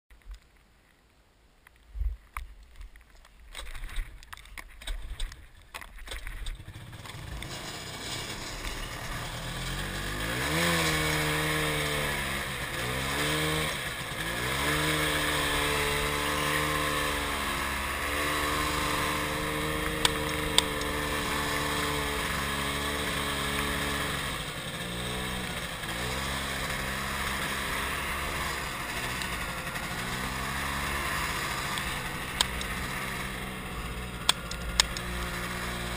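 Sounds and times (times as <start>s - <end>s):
snowmobile engine revving: 6.6s - 35.9s.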